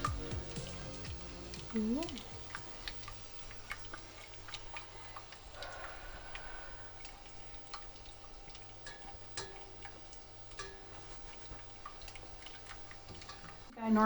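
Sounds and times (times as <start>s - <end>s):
utensils and dishes clinking: 0.0s - 3.2s, 8.8s - 14.0s.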